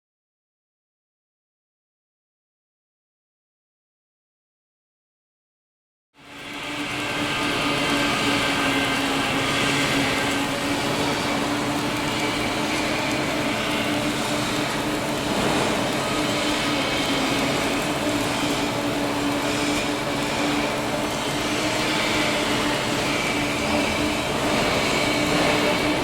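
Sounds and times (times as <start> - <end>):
welding machine humming and hissing: 6.2 - 26.0.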